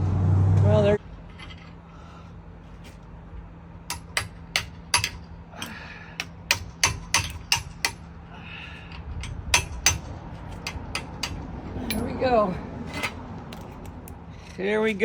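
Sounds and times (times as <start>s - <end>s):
hammer striking metal: 3.9s - 8.0s, 9.2s - 12.1s.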